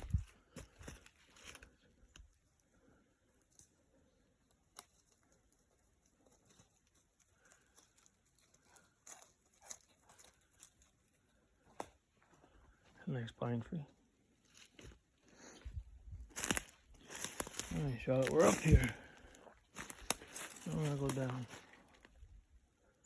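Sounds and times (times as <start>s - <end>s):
footsteps on forest floor: 0.0s - 1.8s, 14.4s - 22.2s.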